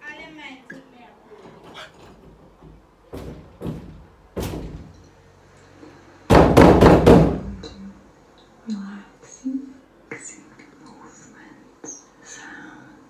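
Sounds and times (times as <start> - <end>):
knocking on a door: 1.7 - 5.0, 6.3 - 7.8.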